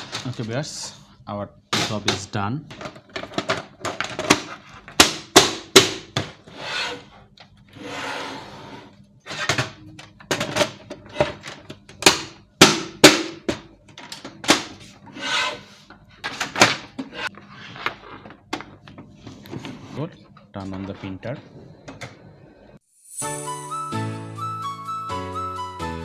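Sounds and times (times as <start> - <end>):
plastic parts clicking and knocking: 0.0 - 0.6, 1.7 - 6.4, 9.4 - 14.8, 17.8 - 19.1.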